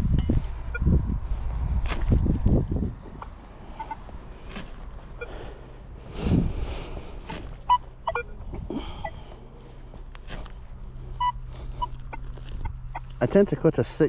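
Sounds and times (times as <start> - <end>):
spade cutting turf and soil: 1.6 - 2.9, 3.5 - 5.6, 7.0 - 7.8, 9.4 - 12.7.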